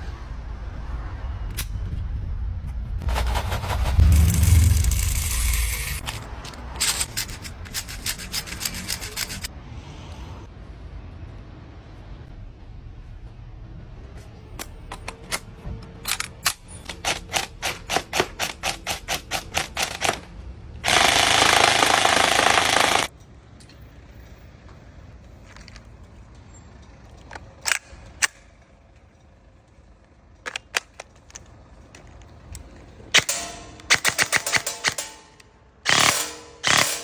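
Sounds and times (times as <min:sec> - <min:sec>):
airsoft guns firing: 0:20.9 - 0:23.1, 0:35.9 - 0:37.0.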